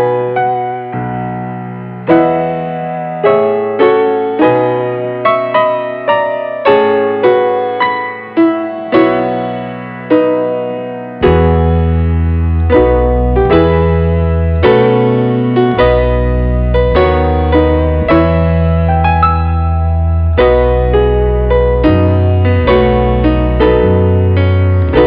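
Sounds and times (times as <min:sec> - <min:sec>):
piano melody: 0:00.0 - 0:25.0
deep held bass line: 0:11.2 - 0:25.0.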